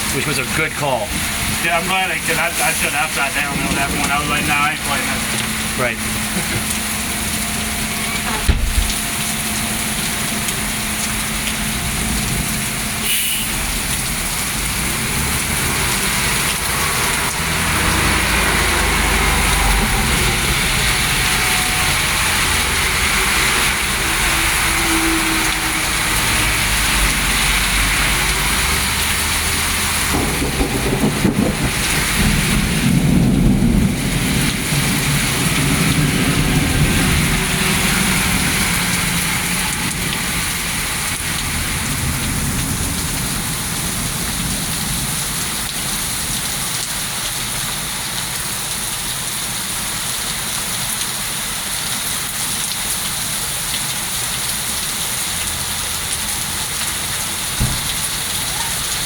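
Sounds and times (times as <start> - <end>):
thunder rumbling: 0.0 - 46.1
heavy rain pouring: 0.0 - 59.0.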